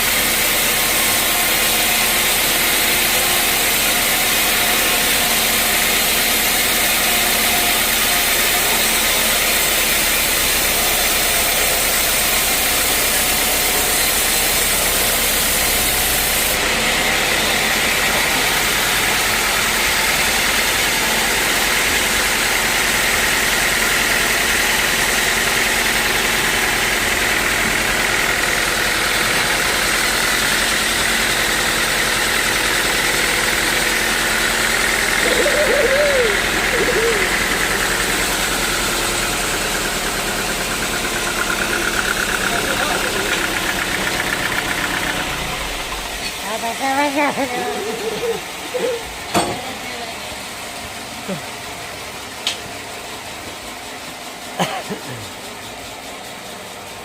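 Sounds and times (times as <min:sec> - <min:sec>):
sawmill engine running: 0:00.0 - 0:57.0.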